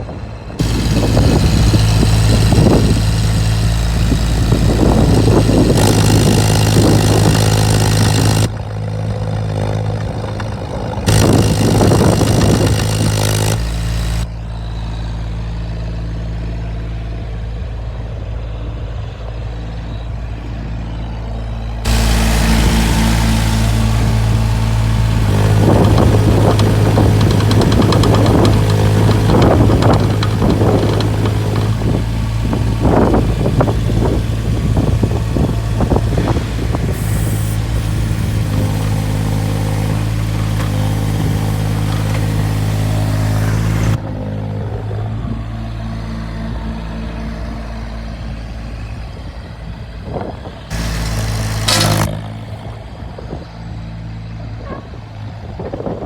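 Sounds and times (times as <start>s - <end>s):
diesel engine running: 0.0s - 56.0s
machine clanks and knocks: 21.9s - 35.0s, 50.7s - 52.3s.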